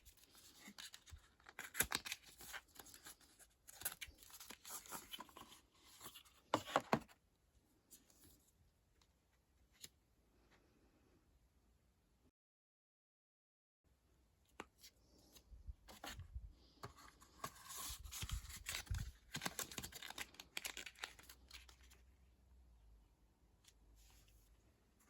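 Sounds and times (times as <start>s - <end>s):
packaging rustling and crinkling: 17.5s - 22.0s.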